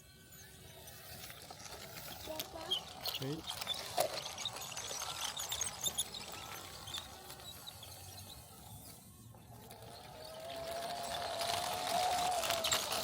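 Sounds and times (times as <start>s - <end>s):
faint bird chirps: 5.4s - 10.2s.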